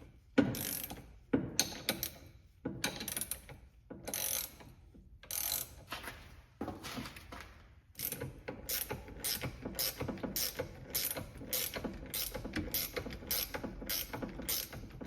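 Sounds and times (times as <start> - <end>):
ratchet wrench clicking: 4.1 - 4.7, 5.3 - 5.8, 8.0 - 15.0.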